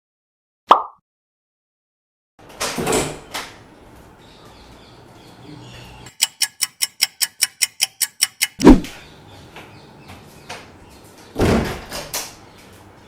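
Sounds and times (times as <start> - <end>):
rapid sharp clicks: 6.1 - 8.7.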